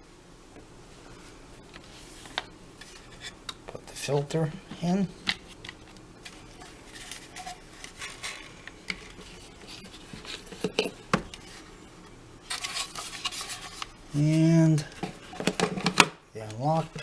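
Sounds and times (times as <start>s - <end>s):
plastic scraping: 1.0s - 17.0s.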